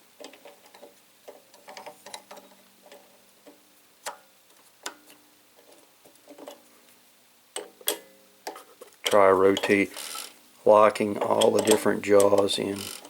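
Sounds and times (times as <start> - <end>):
light metal clicks and taps: 11.2 - 12.6.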